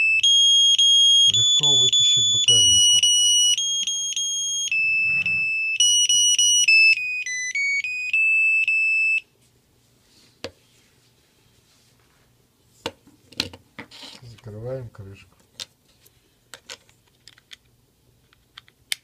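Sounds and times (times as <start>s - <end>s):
high electronic beeps: 1.3s - 6.2s.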